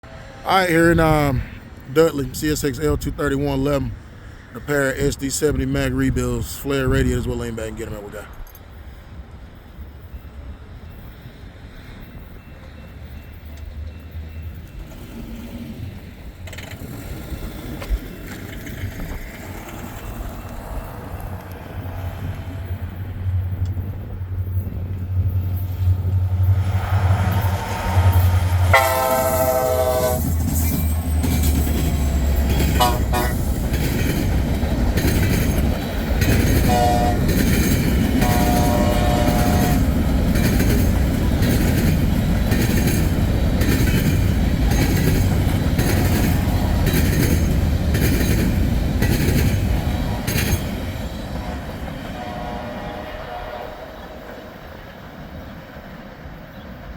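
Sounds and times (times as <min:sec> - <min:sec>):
diesel locomotive engines rumbling: 0:00.0 - 0:56.9
wheel and rail noise: 0:00.0 - 0:56.9
train air horn blasts: 0:25.9 - 0:33.5, 0:36.6 - 0:37.4, 0:38.2 - 0:40.0, 0:45.8 - 0:47.2, 0:49.6 - 0:54.3.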